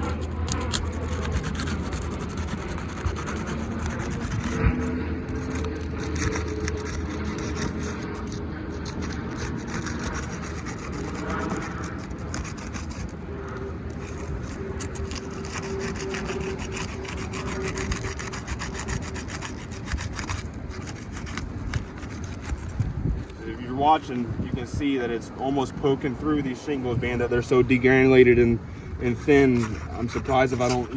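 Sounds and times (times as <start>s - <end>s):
shingles scraping on roof: 29.0s - 30.9s.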